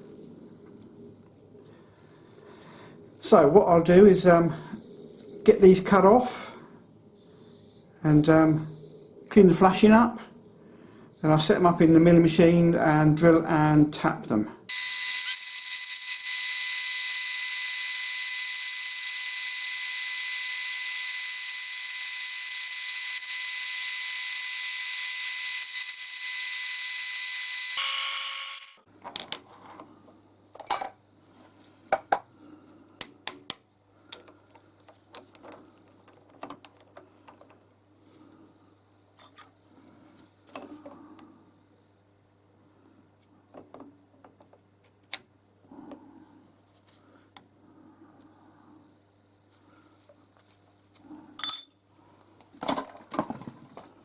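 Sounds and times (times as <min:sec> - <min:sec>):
power tool hiss and whine: 0:14.7 - 0:28.8
light metallic clinks: 0:51.4 - 0:51.8.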